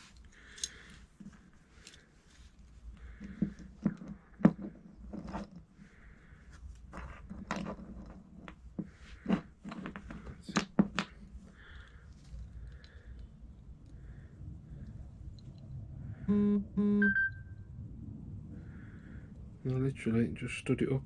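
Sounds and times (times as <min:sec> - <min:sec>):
small metal parts clicking: 0:00.2 - 0:00.9.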